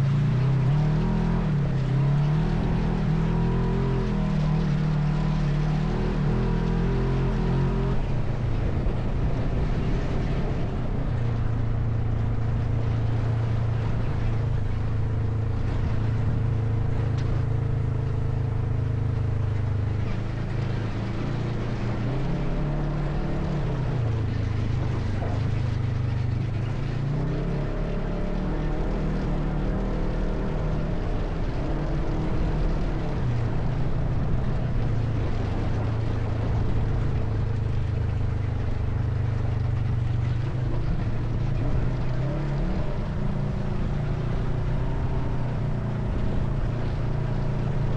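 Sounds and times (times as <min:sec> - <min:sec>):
atv engine running: 0:00.0 - 0:47.9.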